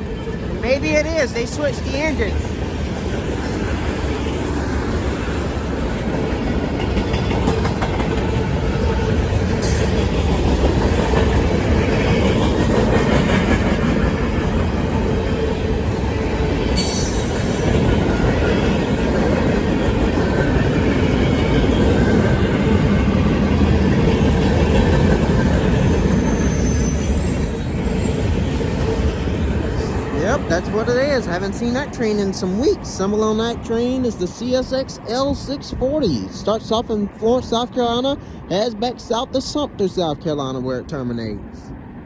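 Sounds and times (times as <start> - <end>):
freight train rolling past: 0.0 - 42.0
wheels clacking over rail joints: 1.7 - 26.6
high wheel squeals: 16.8 - 18.0, 25.8 - 28.4.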